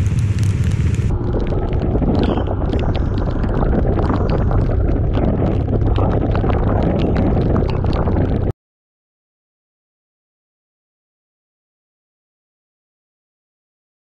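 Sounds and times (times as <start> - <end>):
road and engine rumble: 0.0 - 8.5
wind buffeting microphone: 0.0 - 8.5.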